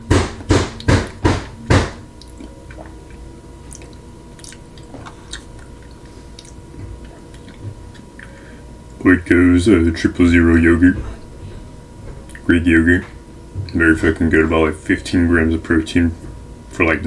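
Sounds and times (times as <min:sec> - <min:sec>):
loud knocks: 0:00.0 - 0:02.0
wet mouth clicks and smacks: 0:02.2 - 0:08.4.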